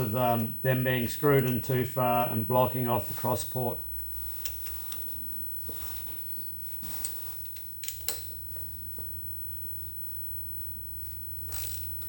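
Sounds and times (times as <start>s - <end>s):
tools and metal parts clicking: 7.0s - 8.4s.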